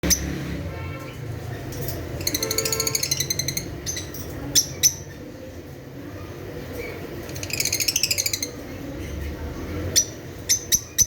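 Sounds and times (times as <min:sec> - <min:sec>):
lovebirds chirping: 0:01.6 - 0:05.7, 0:06.5 - 0:11.0.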